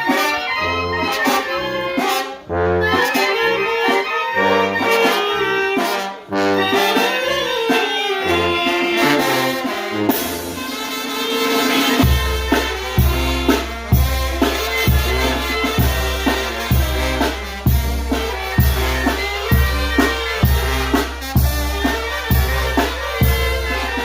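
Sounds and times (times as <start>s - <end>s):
brass band playing: 0.0s - 24.0s
cymbals: 4.7s - 24.0s
heavy low drum beat: 12.0s - 24.0s.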